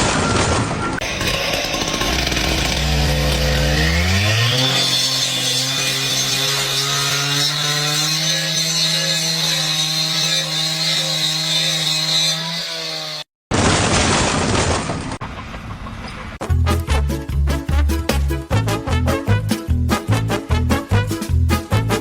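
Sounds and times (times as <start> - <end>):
small engine running: 1.0 - 6.4.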